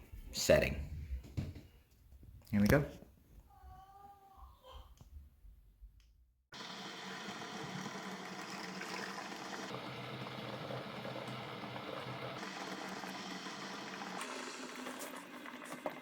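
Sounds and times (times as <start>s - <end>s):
coffee maker humming: 6.6s - 16.0s
water hissing while heating: 6.6s - 16.0s.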